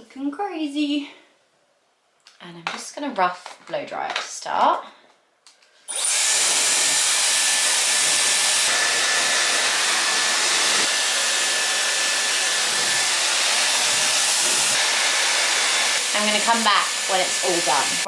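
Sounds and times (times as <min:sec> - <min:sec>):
hair dryer blowing: 0:05.9 - 0:18.0.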